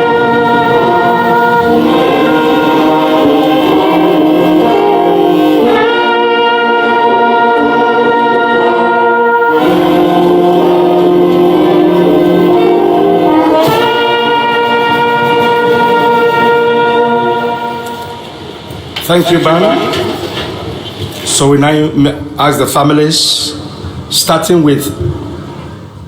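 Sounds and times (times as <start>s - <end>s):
brass band playing chords: 0.0s - 20.7s.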